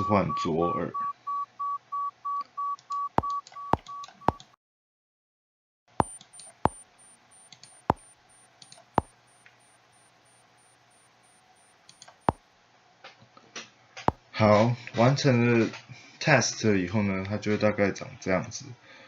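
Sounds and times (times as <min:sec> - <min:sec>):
pulsed pure tone beeps: 0:06.0 - 0:12.4
sharp clicks: 0:06.0 - 0:12.4.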